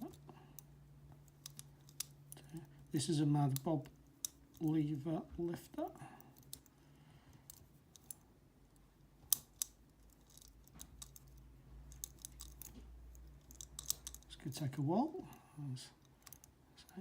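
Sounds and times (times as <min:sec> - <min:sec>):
lock pick metallic clicks and scrapes: 0:00.0 - 0:02.6, 0:07.4 - 0:08.2, 0:09.3 - 0:14.6.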